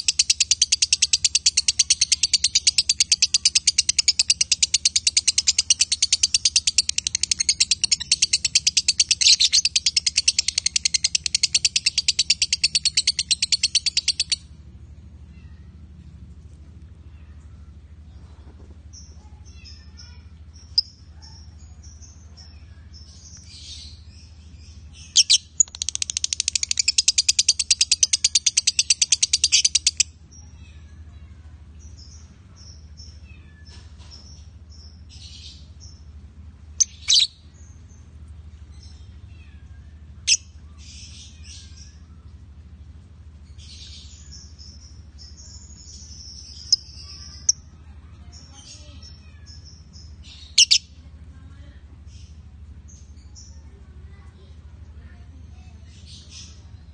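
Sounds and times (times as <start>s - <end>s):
fast bird chatter: 0.0s - 14.4s, 25.0s - 30.0s, 49.8s - 50.9s
birds chirping and twittering: 0.0s - 56.9s.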